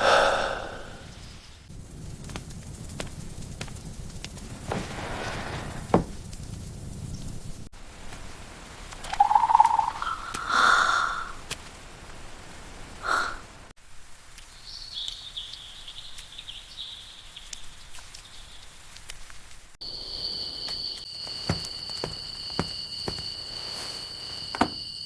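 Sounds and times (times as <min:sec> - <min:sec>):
countryside ambience: 0:00.0 - 0:25.0
high-pitched chirping: 0:09.1 - 0:10.3.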